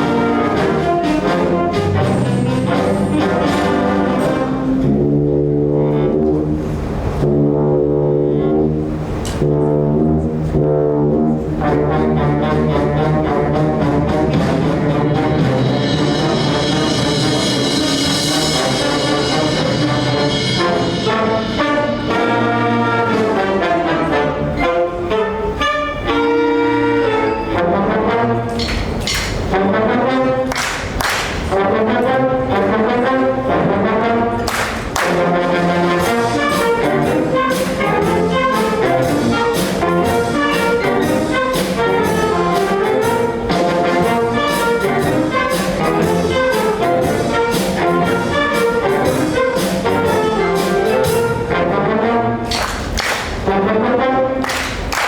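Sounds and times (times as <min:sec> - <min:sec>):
steady percussion beat: 0:00.0 - 0:04.8, 0:12.5 - 0:23.4, 0:28.6 - 0:29.8, 0:30.5 - 0:31.8, 0:34.4 - 0:51.6, 0:54.4 - 0:55.0
wind band playing: 0:00.0 - 0:55.0
loud percussion strikes: 0:13.6 - 0:22.9, 0:28.5 - 0:29.6, 0:30.5 - 0:31.8, 0:34.5 - 0:51.4.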